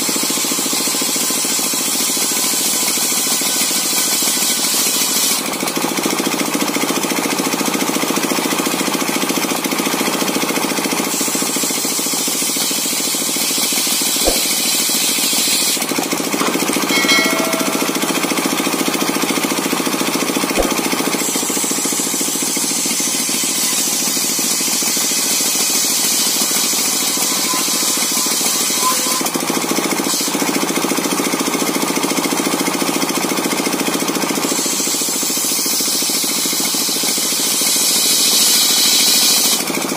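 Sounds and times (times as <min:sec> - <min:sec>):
circular sawmill engine knocking: 0:00.2 - 0:39.9
saw hissing through wood: 0:11.1 - 0:17.4, 0:34.6 - 0:39.9
sharp knocks: 0:14.2 - 0:15.7, 0:16.3 - 0:18.7, 0:20.6 - 0:21.1.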